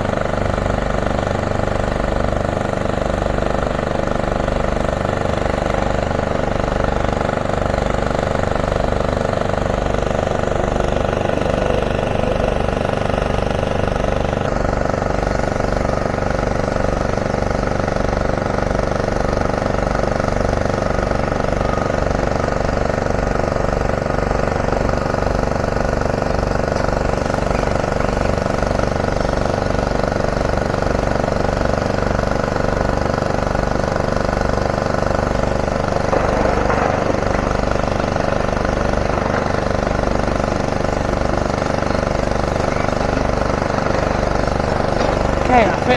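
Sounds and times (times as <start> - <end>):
heavy diesel machinery drone: 0.0 - 45.9.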